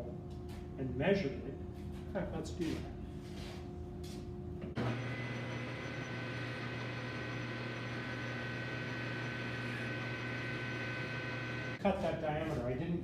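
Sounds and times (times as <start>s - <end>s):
thin high whine: 2.7s - 11.8s
metal lathe humming: 4.8s - 11.8s.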